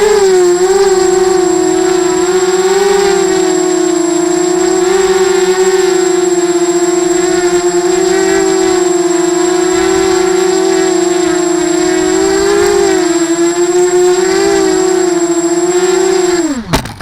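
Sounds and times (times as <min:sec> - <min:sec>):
quadcopter buzzing whine: 0:00.0 - 0:17.0.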